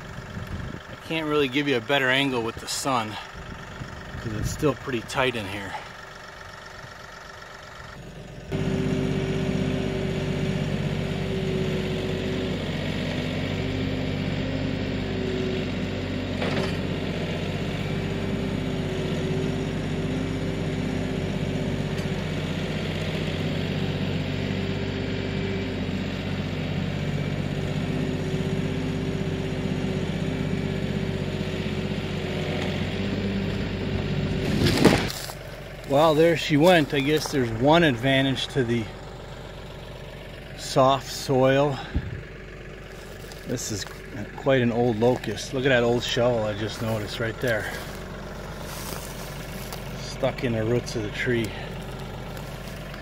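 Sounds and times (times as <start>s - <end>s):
tractor diesel engine under load: 0.0s - 53.0s.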